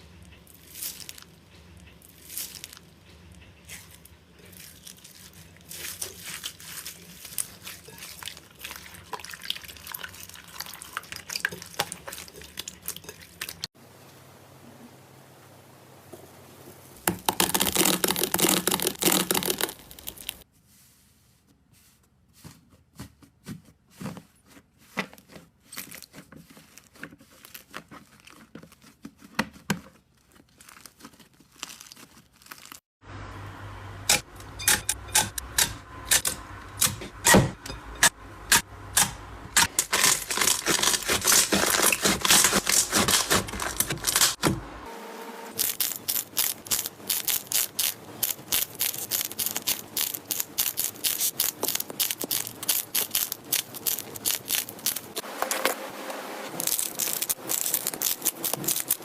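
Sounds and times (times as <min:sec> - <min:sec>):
slime crackling and popping: 0:17.1 - 0:20.4, 0:30.2 - 0:32.8, 0:45.6 - 0:55.2, 0:56.6 - 0:59.0.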